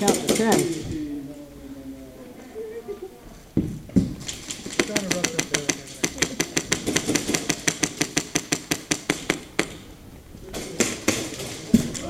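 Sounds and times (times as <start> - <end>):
airsoft gunfire: 0.0 - 0.8, 4.0 - 9.9, 10.6 - 12.0.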